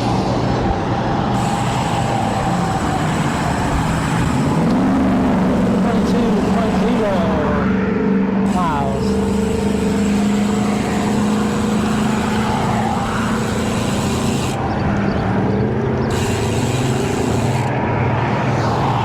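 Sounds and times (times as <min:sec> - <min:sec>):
low hum: 0:00.0 - 0:19.0
bicycle tyres on pavement: 0:01.2 - 0:07.6, 0:08.5 - 0:17.8
wind rush: 0:12.6 - 0:19.0.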